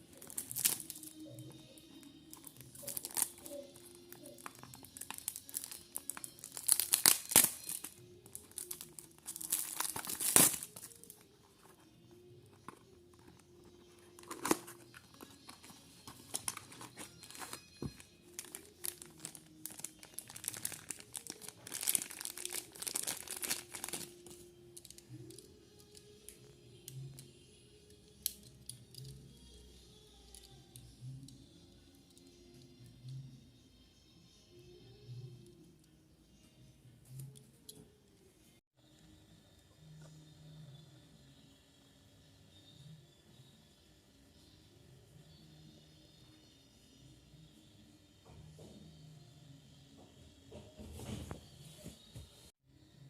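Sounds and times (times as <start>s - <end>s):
packaging crinkling and tearing: 0.2s - 1.3s, 2.3s - 11.2s, 14.1s - 25.0s.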